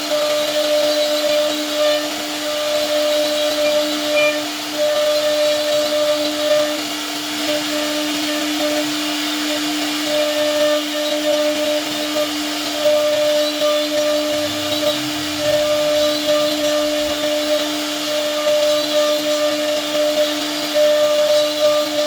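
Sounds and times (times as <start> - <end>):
cnc router spindle whining: 0.0 - 22.0
bit cutting wood hiss: 12.8 - 18.0.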